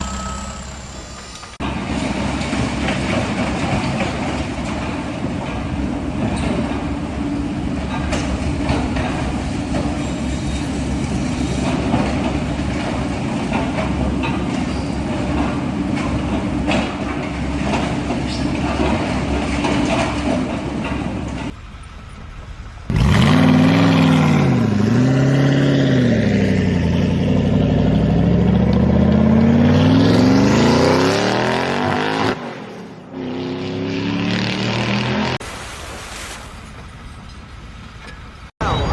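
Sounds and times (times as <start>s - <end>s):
knocks and clanks: 0.0s - 21.6s
heavy vehicle engine running: 0.0s - 31.1s
engine revving: 22.9s - 35.4s.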